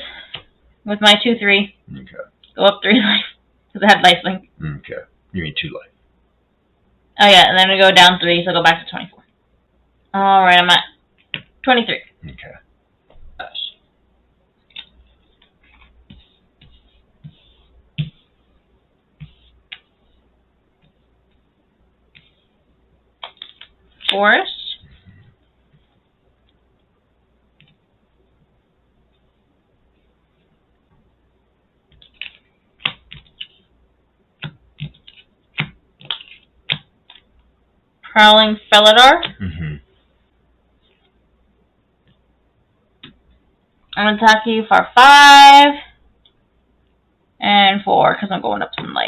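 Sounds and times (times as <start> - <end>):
playing cards handled on table: 31.9 - 33.6, 34.4 - 37.3.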